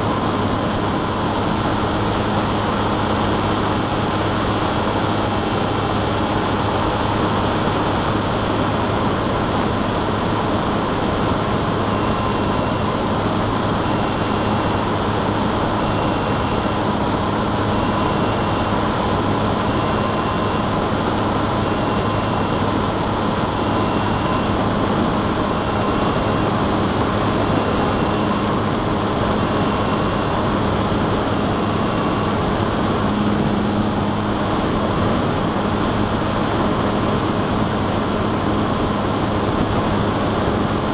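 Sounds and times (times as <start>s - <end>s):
high electronic beep: 11.9s - 13.0s, 13.8s - 14.9s, 15.8s - 16.8s, 17.7s - 18.8s, 19.6s - 20.7s, 21.6s - 22.7s, 23.5s - 24.6s, 25.5s - 26.5s, 27.4s - 28.5s, 29.3s - 30.4s, 31.3s - 32.4s.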